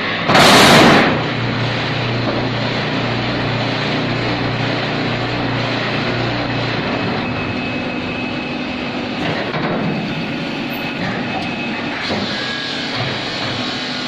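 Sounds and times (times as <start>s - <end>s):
brick-making machine running: 0.0s - 14.0s
faint high whine: 7.0s - 9.2s.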